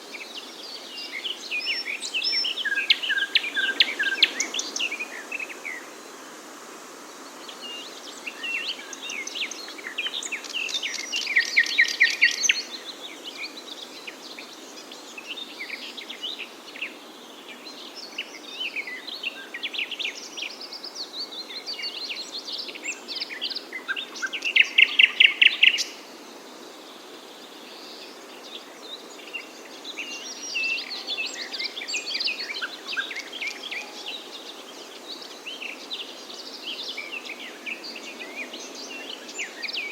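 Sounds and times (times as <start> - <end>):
songbirds chirping and singing: 0.0 - 5.9, 27.6 - 39.9
background hiss: 0.0 - 39.9.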